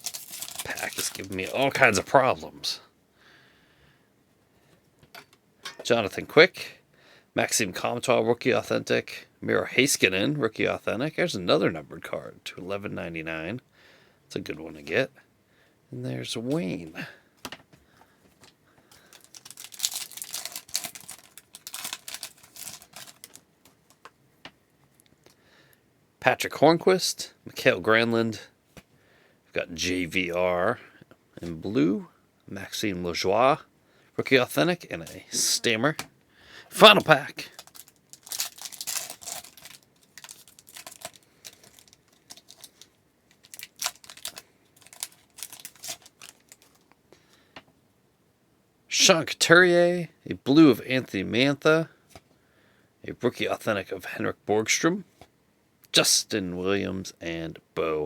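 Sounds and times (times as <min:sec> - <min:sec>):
foil wrapper crinkling: 0:00.0 - 0:02.3, 0:19.0 - 0:24.1, 0:36.8 - 0:46.9.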